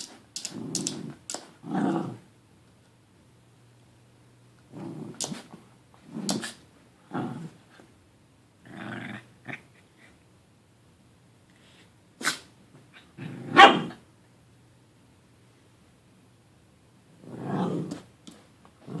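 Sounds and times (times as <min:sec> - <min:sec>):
dog growling and barking: 0:00.4 - 0:02.3, 0:04.7 - 0:07.6, 0:08.6 - 0:09.7, 0:13.0 - 0:14.0, 0:17.1 - 0:18.1, 0:18.8 - 0:19.0.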